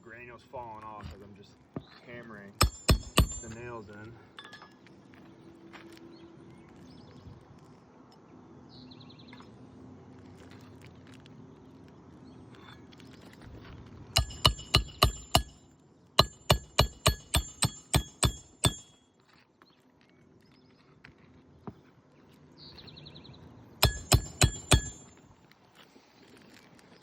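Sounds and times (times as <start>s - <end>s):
hammer driving nails: 2.6s - 3.6s, 14.2s - 15.6s, 16.2s - 19.0s, 23.8s - 25.2s.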